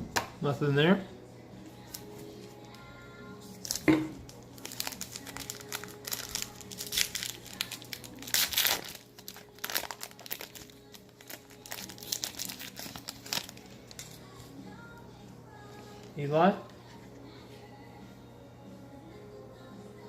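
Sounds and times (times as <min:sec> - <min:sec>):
foil wrapper tearing and crinkling: 0:03.6 - 0:14.2.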